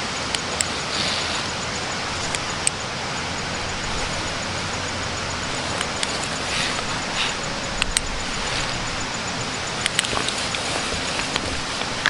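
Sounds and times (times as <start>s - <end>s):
steady rushing noise: 0.0s - 12.0s
small sharp clicks: 7.8s - 8.1s, 9.8s - 12.0s.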